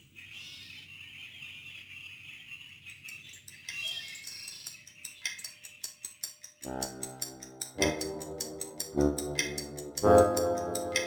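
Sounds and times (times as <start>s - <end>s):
light rhythmic percussion: 3.1s - 11.0s.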